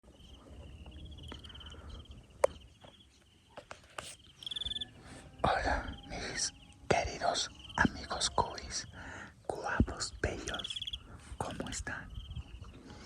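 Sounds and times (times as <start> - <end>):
crickets chirping: 0.1 - 12.7.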